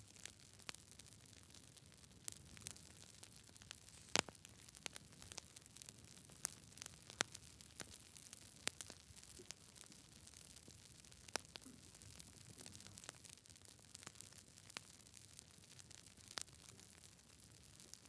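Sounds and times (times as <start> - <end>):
campfire crackling and popping: 0.0 - 18.0
faint steady hiss: 0.0 - 18.0.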